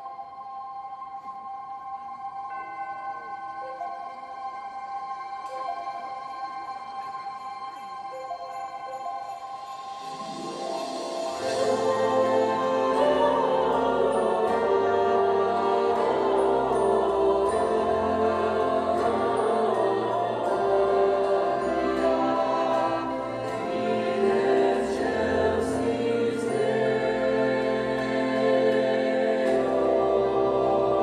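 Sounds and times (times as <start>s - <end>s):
orchestral backing: 1.8s - 31.0s
choir singing held chords: 8.9s - 31.0s.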